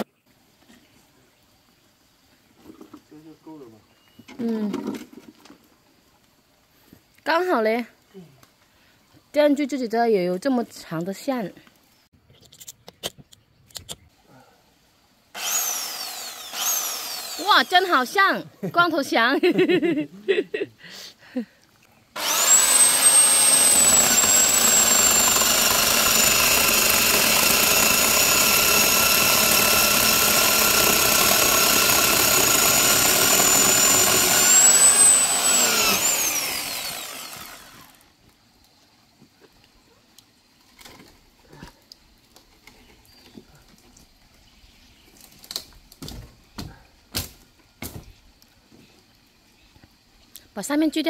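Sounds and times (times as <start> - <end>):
electric chainsaw whining: 15.4 - 18.2, 22.2 - 38.1.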